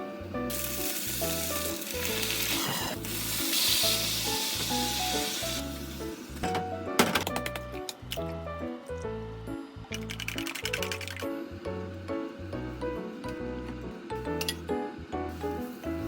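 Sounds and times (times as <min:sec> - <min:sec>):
background music: 0:00.0 - 0:16.0
food sizzling in oil: 0:00.4 - 0:06.4.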